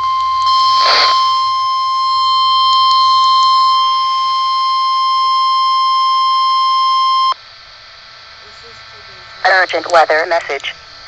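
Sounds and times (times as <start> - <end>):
steady alarm tone: 0.0 - 7.4.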